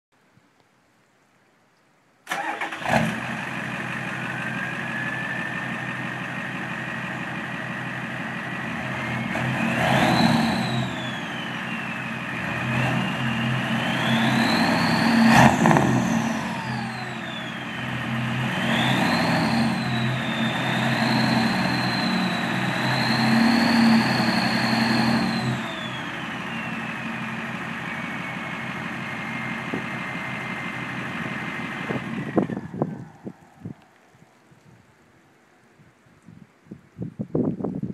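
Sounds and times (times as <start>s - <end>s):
diesel engine idling and revving: 2.3s - 33.9s
turbo whistle: 13.1s - 15.5s, 16.5s - 27.2s.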